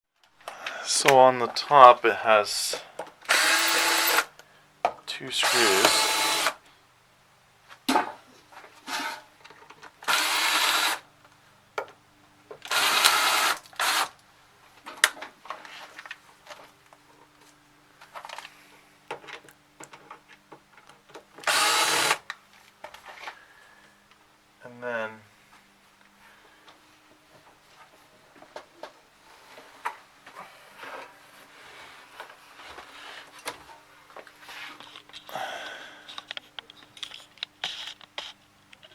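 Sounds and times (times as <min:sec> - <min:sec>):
power drill whirring: 0:03.2 - 0:04.3, 0:05.4 - 0:06.6, 0:08.9 - 0:09.2, 0:10.0 - 0:11.0, 0:12.6 - 0:14.1, 0:21.4 - 0:22.2
screwdriver clicks and scrapes: 0:36.1 - 0:38.9.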